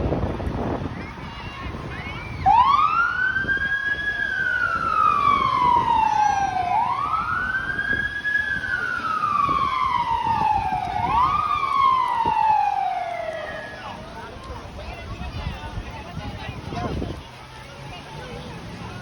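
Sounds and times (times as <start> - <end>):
electronic siren wailing: 2.4 - 13.8.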